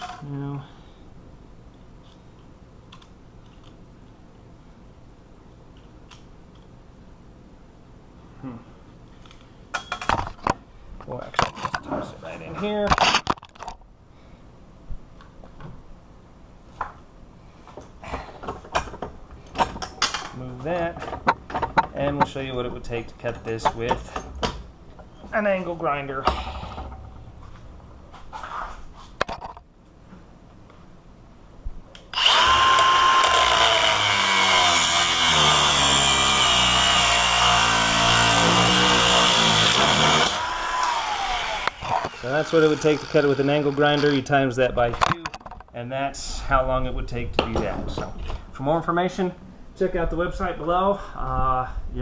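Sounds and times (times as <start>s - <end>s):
angle grinder cutting metal: 32.1s - 44.2s.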